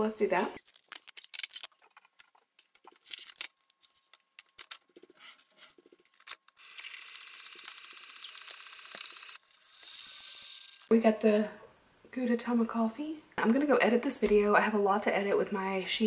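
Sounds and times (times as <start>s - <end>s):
coffee appliance buzzing: 6.6s - 10.9s.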